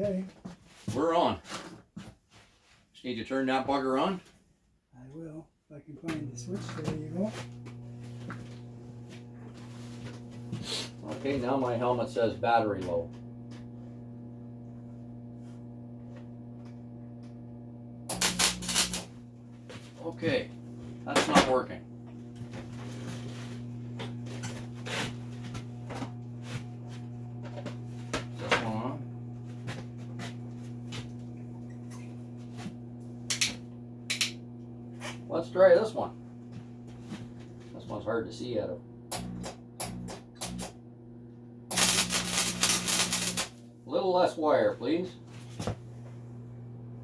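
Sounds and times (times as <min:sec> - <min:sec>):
welder electrical hum: 0:06.0 - 0:47.0
welding arc crackling: 0:18.1 - 0:19.2, 0:33.2 - 0:34.4, 0:39.1 - 0:40.8, 0:41.7 - 0:43.7.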